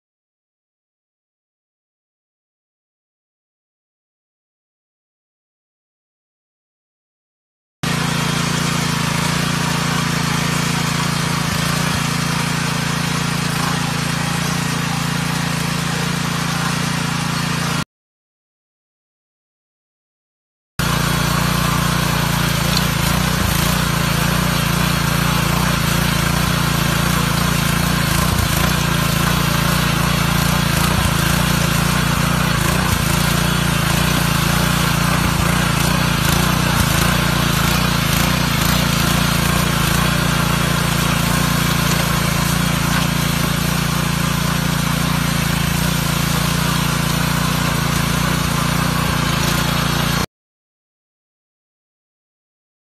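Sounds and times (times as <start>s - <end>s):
small petrol engine running: 7.8s - 17.8s, 20.8s - 50.3s.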